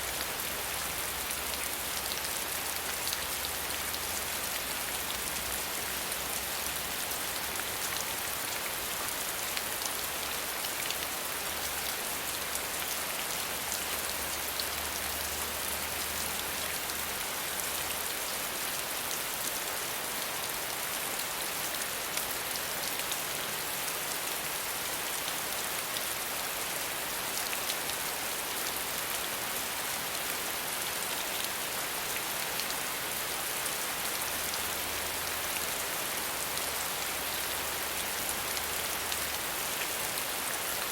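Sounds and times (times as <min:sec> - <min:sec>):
steady rain patter: 0:00.0 - 0:40.9.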